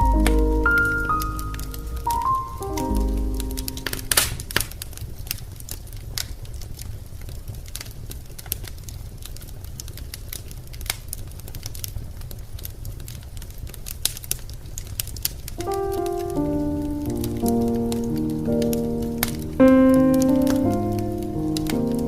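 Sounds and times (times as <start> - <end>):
music: 0.0 - 4.6, 15.6 - 22.0
wood fire crackling: 0.0 - 22.0.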